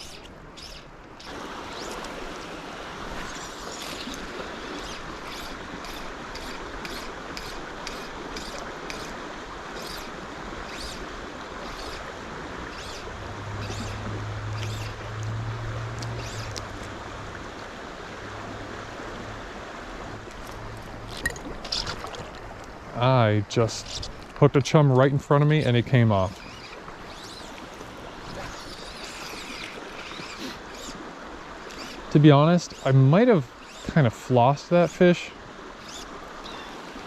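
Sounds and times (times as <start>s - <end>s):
short scratchy rasps: 0.0s - 17.0s, 25.5s - 31.0s, 31.6s - 34.3s, 35.8s - 37.0s
low hum: 0.0s - 31.0s
river water flowing: 0.0s - 37.0s.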